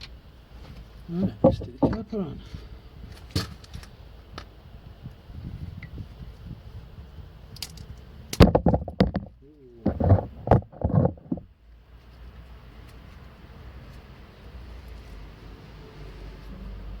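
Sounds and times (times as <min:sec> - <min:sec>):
metal brake caliper clunking: 0:01.1 - 0:02.2.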